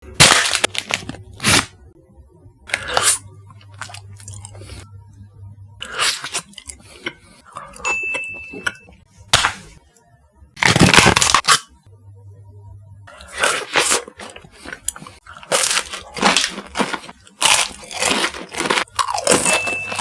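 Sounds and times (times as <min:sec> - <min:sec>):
crunchy ice cream chewing: 0:02.7 - 0:04.8, 0:05.8 - 0:07.9, 0:13.1 - 0:20.0.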